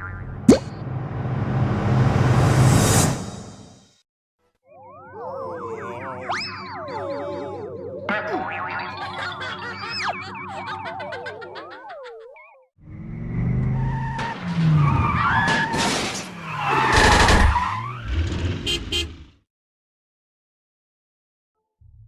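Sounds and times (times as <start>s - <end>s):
sharp bangs and crashes: 14.1s - 17.8s.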